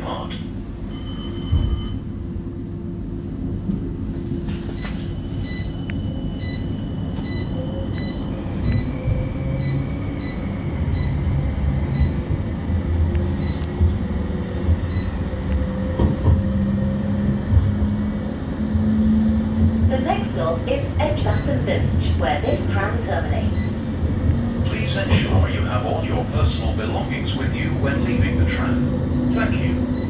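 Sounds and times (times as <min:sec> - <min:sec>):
tram running rumble: 0:00.0 - 0:30.0.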